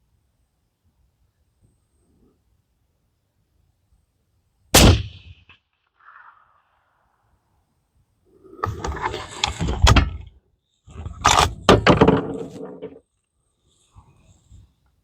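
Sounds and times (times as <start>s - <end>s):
rifle bolt clicking and sliding: 11.1s - 11.6s.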